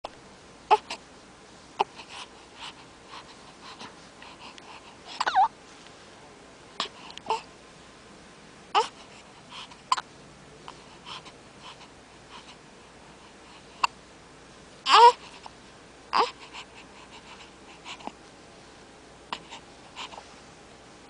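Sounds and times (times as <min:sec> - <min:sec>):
baby breathing softly: 0:01.8 - 0:06.0, 0:06.8 - 0:07.5, 0:08.8 - 0:10.0, 0:10.6 - 0:14.0, 0:15.0 - 0:20.4
baby hiccuping: 0:05.2 - 0:05.5
baby whimpering: 0:05.2 - 0:05.5, 0:08.8 - 0:09.0, 0:14.9 - 0:15.2, 0:16.1 - 0:16.4.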